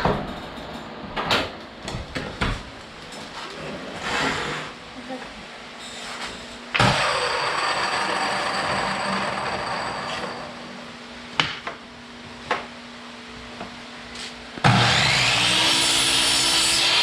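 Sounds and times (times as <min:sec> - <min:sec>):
chop saw motor whining: 0:06.8 - 0:10.6, 0:14.6 - 0:17.0.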